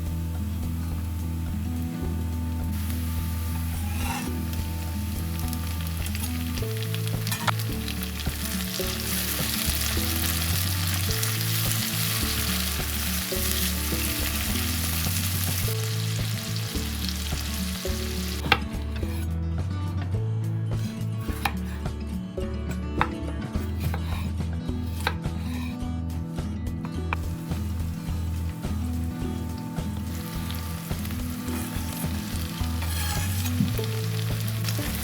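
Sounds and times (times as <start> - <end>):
food sizzling in a pan: 0.0 - 18.6, 27.2 - 35.0.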